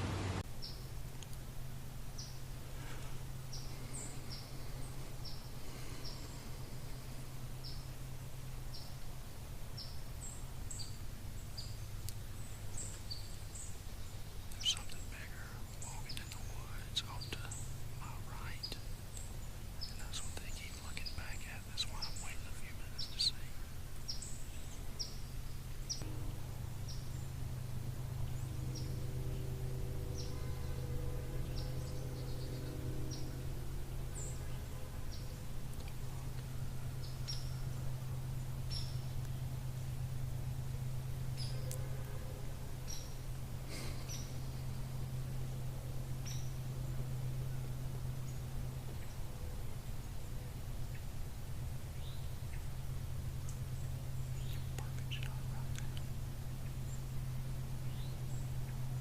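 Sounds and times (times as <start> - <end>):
steady low hum: 0.0 - 59.0
birds chip calls: 0.1 - 59.0
small bird chipping: 9.8 - 26.1, 42.8 - 44.8, 53.4 - 57.1.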